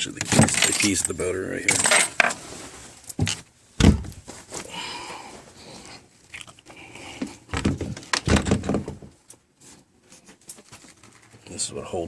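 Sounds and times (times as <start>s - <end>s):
heavy door thump: 3.8s - 4.2s, 7.6s - 9.0s.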